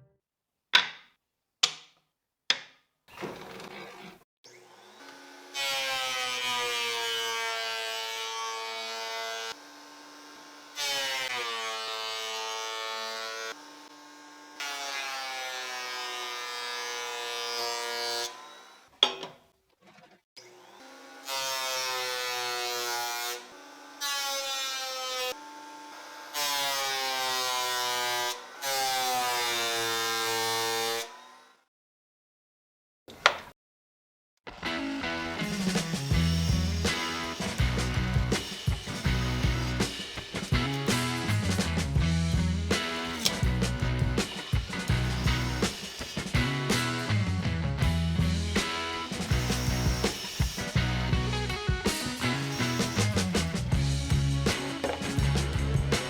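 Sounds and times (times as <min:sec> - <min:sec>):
electric power tool running: 0:04.5 - 0:08.1, 0:09.0 - 0:16.3, 0:20.4 - 0:22.8, 0:34.5 - 0:56.0.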